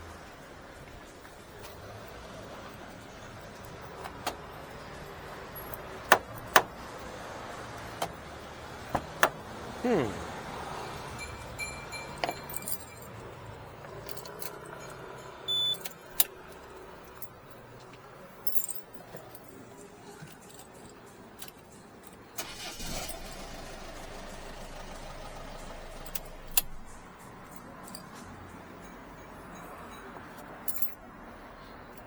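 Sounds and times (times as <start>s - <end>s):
keys and lock tools clicking: 3.4s - 4.8s, 5.4s - 6.8s, 11.6s - 13.2s, 13.9s - 22.4s, 26.0s - 28.4s, 30.2s - 31.0s.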